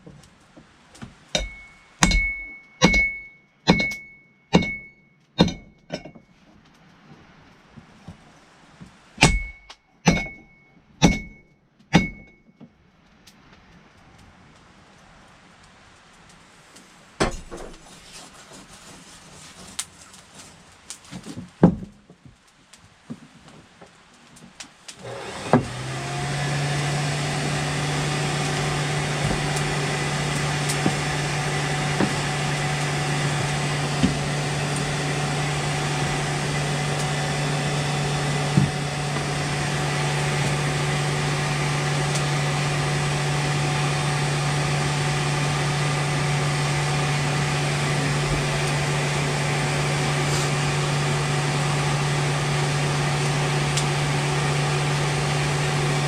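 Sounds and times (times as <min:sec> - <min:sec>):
electric motor spinning up and humming: 0:25.0 - 0:56.0.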